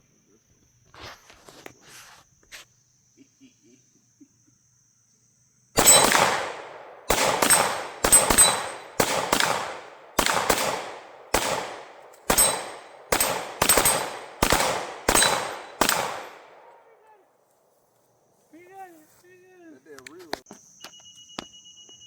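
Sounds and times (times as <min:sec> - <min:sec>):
pistol shots echoing: 0:05.8 - 0:16.9.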